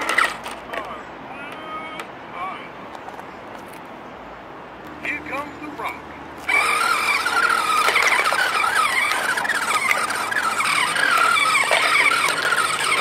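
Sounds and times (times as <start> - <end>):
electronic toy engine sound: 6.4 - 13.0.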